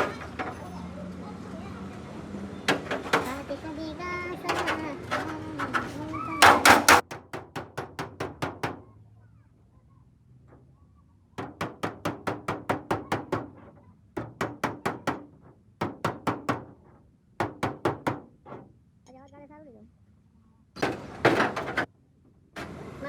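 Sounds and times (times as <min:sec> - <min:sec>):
hammer tapping sheet metal: 0:04.4 - 0:08.8, 0:11.4 - 0:16.8.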